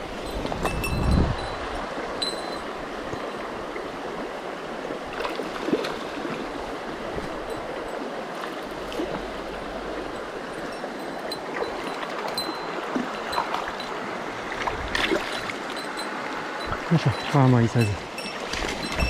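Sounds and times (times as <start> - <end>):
stream rushing over rocks: 0.0 - 19.0.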